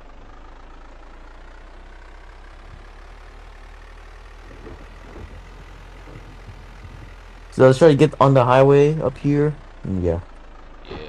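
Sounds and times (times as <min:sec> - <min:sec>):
car engine hum inside cabin: 0:00.0 - 0:11.0
small knocks: 0:04.4 - 0:07.6.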